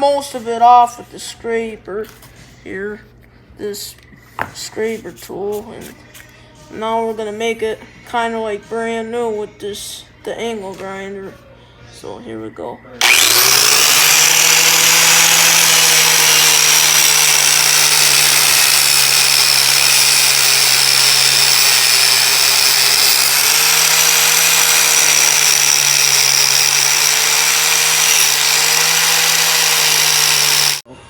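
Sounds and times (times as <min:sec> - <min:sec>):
angle grinder grinding metal: 0:13.0 - 0:30.9.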